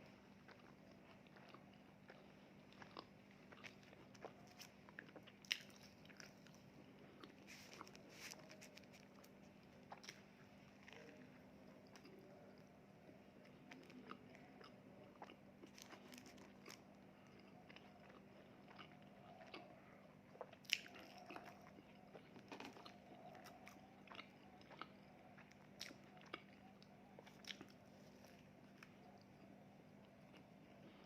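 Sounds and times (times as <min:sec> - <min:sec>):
person chewing food: 0:00.0 - 0:31.0
crisp crunches: 0:03.6 - 0:10.2.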